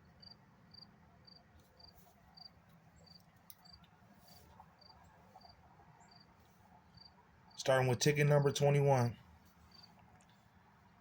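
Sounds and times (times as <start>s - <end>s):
cricket chirping: 0.2s - 3.8s, 4.8s - 6.3s, 9.7s - 10.0s.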